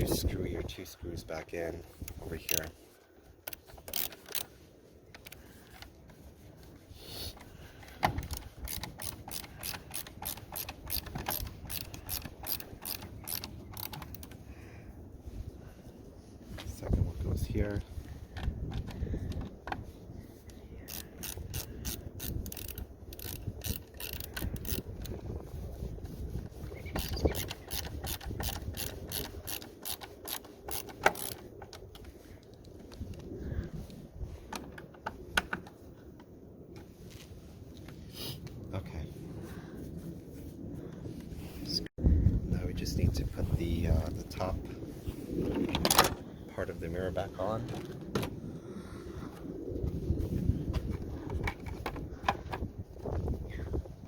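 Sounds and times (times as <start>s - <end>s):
hand ratchet clicking: 3.4s - 4.5s, 8.0s - 14.4s, 20.9s - 25.2s, 26.9s - 31.4s.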